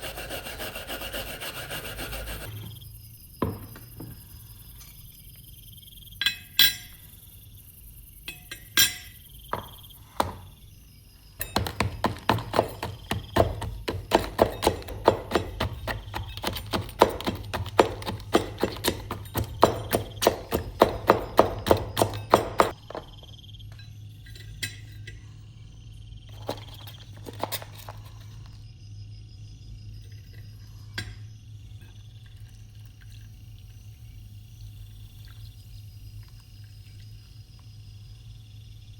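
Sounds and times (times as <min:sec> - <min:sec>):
hammer striking metal: 0:11.4 - 0:23.0.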